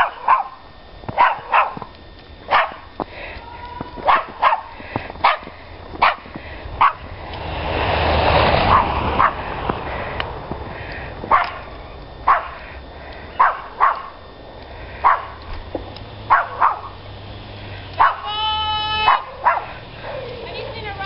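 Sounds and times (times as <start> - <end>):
dog barking: 0.0 - 1.9, 2.5 - 2.9, 4.0 - 7.1, 8.7 - 9.4, 11.3 - 12.6, 13.4 - 14.2, 15.0 - 15.4, 16.3 - 17.0, 18.0 - 18.3, 19.0 - 20.9
broad rushing noise: 0.0 - 21.0.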